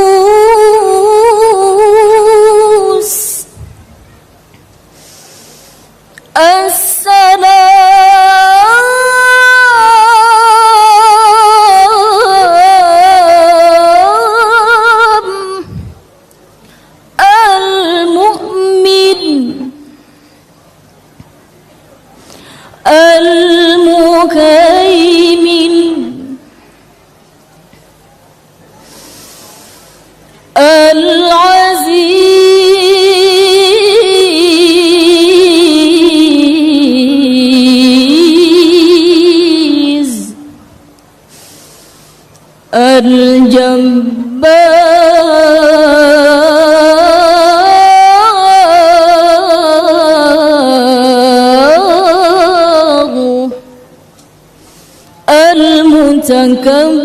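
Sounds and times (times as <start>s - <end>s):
woman chanting melodically: 0.0s - 3.6s, 6.3s - 16.1s, 17.2s - 20.0s, 22.8s - 26.5s, 30.5s - 40.6s, 42.7s - 53.8s, 55.2s - 57.0s.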